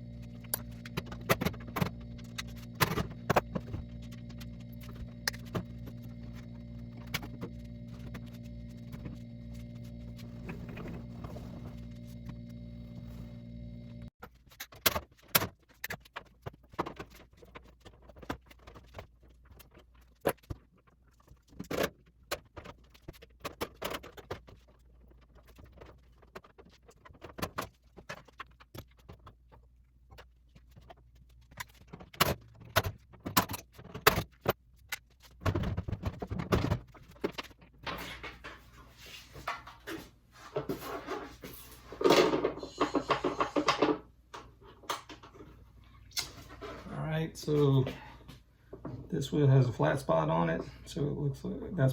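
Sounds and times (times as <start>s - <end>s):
scraping and handling noise: 0.0s - 49.2s.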